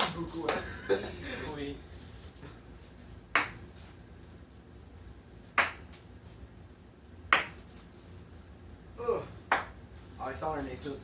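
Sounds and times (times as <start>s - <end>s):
ping-pong ball clicking on hard surface: 7.3s - 7.6s, 9.5s - 9.8s.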